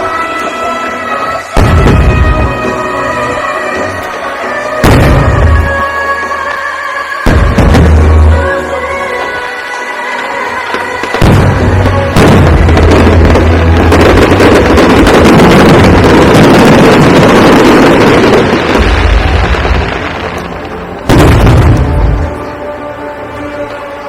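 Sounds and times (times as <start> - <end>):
fireworks booming and crackling: 1.4 - 3.1, 3.7 - 6.4, 7.2 - 9.4, 10.1 - 22.5.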